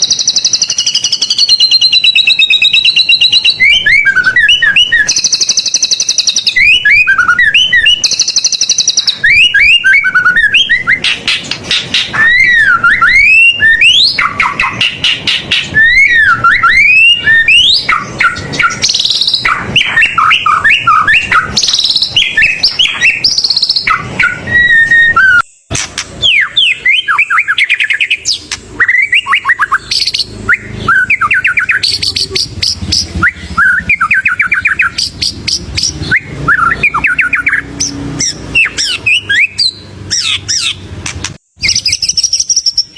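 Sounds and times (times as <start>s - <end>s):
bird singing varied song: 0.0s - 42.9s.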